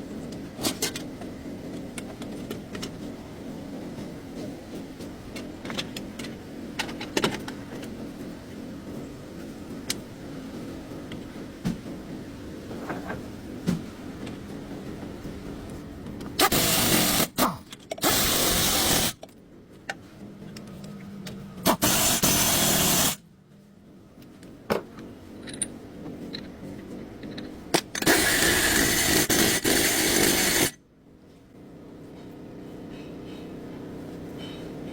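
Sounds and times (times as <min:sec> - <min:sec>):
power tool running in bursts: 0:16.4 - 0:17.3, 0:18.0 - 0:19.2, 0:21.7 - 0:23.2.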